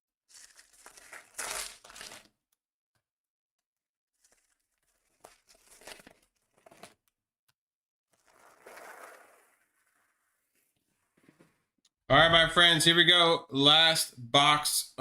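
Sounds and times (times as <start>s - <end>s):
plastic packaging crinkling and tearing: 0.3s - 2.3s, 4.2s - 7.0s.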